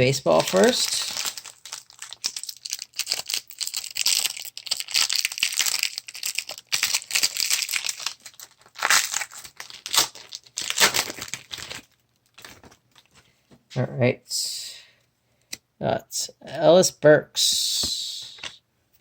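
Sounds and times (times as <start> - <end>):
wrapper tearing and crinkling: 0.0 - 13.1.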